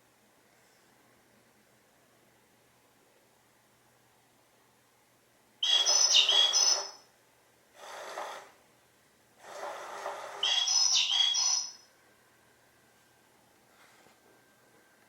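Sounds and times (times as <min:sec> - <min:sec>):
electronic toy bird chirps: 0:05.6 - 0:07.1, 0:10.4 - 0:11.9.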